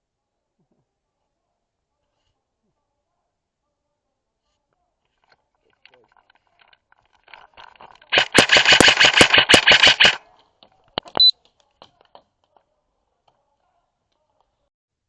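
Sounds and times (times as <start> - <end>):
airsoft gun firing: 8.1 - 10.2.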